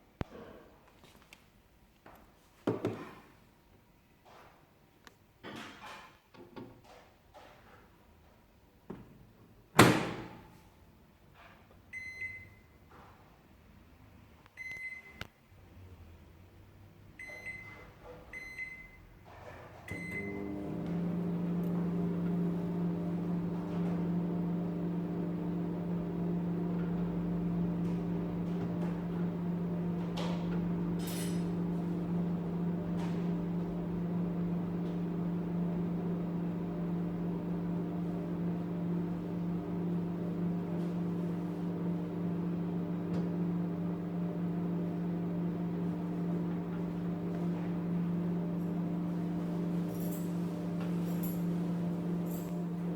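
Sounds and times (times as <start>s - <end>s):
microwave keypad beeps: 12.0s - 12.6s, 17.2s - 17.8s, 18.4s - 19.0s
microwave oven humming: 19.9s - 52.9s.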